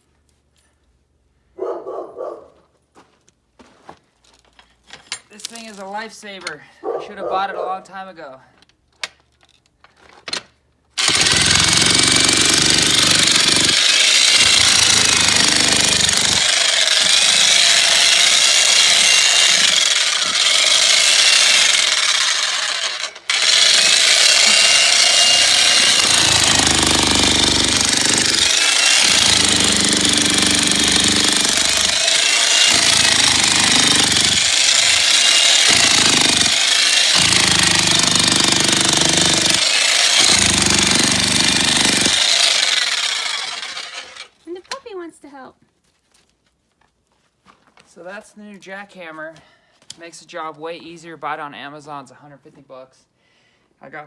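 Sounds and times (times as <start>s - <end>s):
jackhammer hammering rocky ground: 11.0s - 44.3s.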